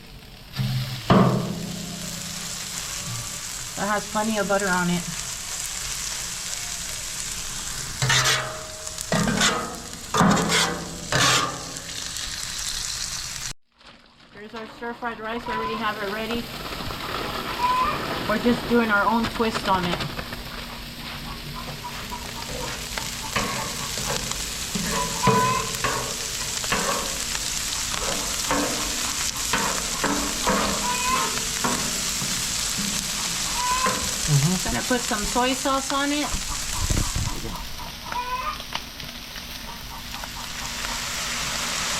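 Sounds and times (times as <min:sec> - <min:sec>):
food sizzling on a griddle: 0:00.0 - 0:41.9
metal spatula scraping griddle: 0:07.4 - 0:12.3, 0:21.0 - 0:35.4
spatula scraping steel: 0:08.0 - 0:11.7.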